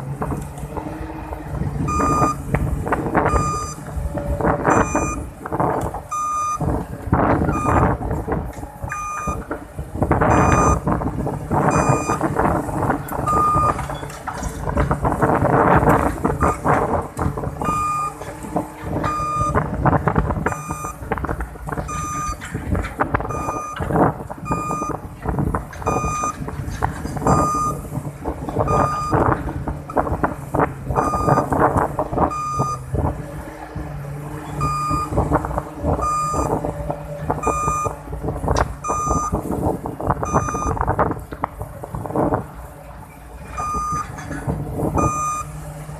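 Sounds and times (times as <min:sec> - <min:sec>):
diesel engine running: 0:00.0 - 0:45.9
excavator travel alarm beeping: 0:01.7 - 0:21.1, 0:21.7 - 0:25.2, 0:25.8 - 0:30.2, 0:30.9 - 0:33.0, 0:34.4 - 0:41.1, 0:43.5 - 0:45.6
metal clanking and knocking: 0:43.6 - 0:44.7.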